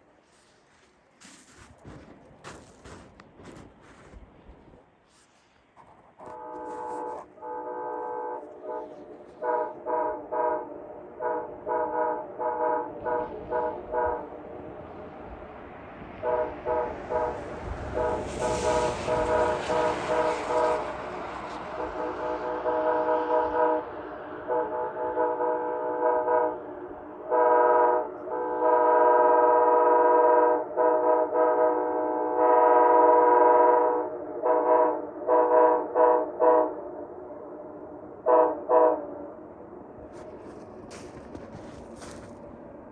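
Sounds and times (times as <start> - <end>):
passing train rushing: 0.0 - 42.9
locomotive air horn: 6.2 - 14.5, 16.2 - 36.8, 38.2 - 39.1.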